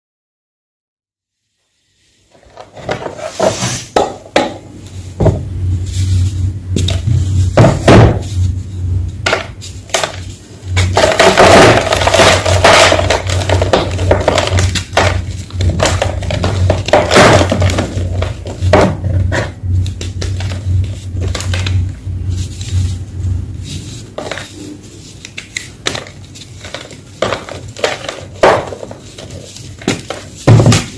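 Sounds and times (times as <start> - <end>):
low steady hum: 1.8 - 30.9
chalk blocks crunching: 9.7 - 18.6, 23.7 - 30.9.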